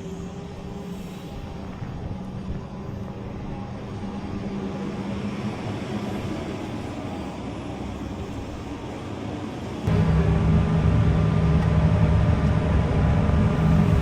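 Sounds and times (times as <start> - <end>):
louder lower engine: 9.9 - 14.0
vehicle engine running: 9.9 - 14.0.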